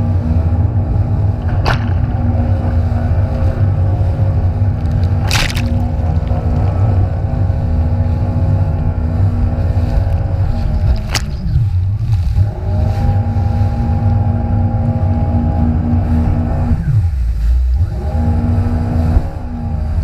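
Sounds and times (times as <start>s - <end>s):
jet ski engine: 0.0s - 20.0s
wind and water rumble: 0.0s - 20.0s
sharp water slap: 5.1s - 6.2s.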